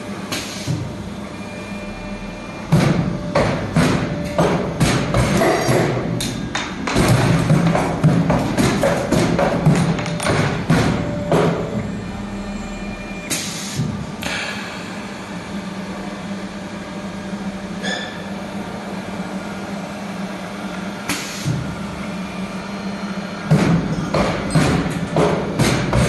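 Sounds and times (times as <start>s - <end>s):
machine humming: 0.0s - 26.0s
brief squeak: 17.8s - 18.2s.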